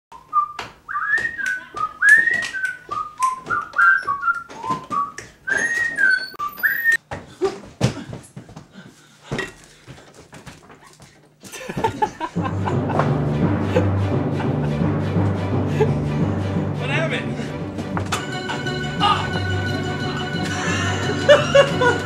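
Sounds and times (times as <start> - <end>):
person whistling a tune: 0.1 - 7.0
knocks and thumps: 17.7 - 18.3.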